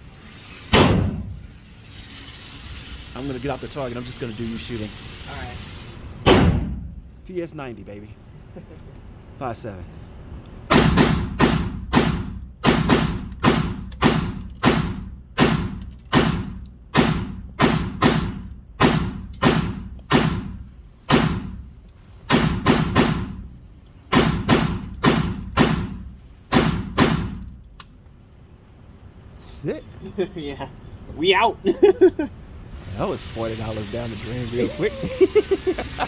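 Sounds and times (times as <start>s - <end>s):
carbine gunshots: 10.7s - 21.6s, 22.3s - 23.4s, 24.1s - 27.5s.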